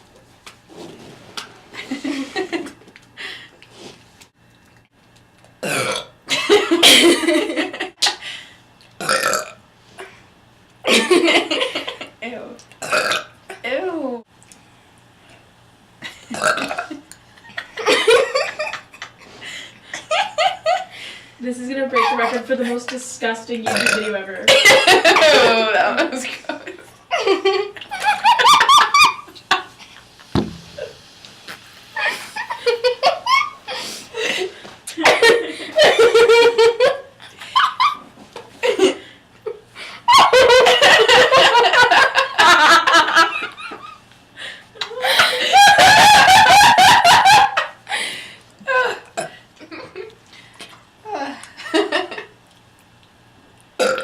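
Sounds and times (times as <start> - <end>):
woman belching: 5.6 - 6.2, 9.0 - 9.6, 12.8 - 13.4, 16.3 - 16.9, 23.6 - 24.2, 53.8 - 54.0.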